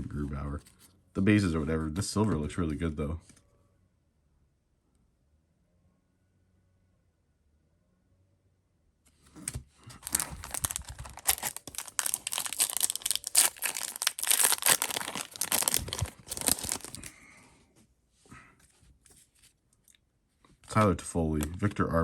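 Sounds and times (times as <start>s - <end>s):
wrapper tearing and crinkling: 9.9s - 17.1s.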